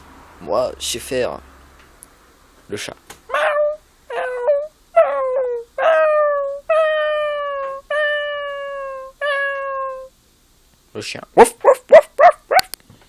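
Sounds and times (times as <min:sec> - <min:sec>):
man imitating cat meows: 0:05.0 - 0:10.1.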